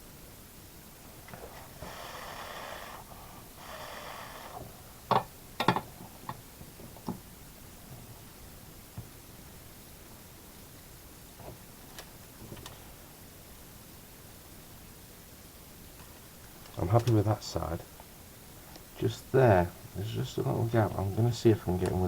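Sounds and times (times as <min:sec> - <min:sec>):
breathy hissing rushes: 0:01.2 - 0:05.1.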